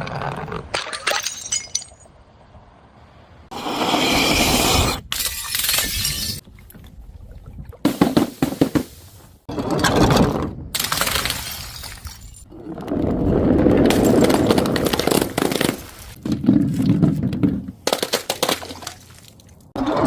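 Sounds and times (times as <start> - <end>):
glass bottles shattering: 0.7 - 2.1, 5.2 - 6.4.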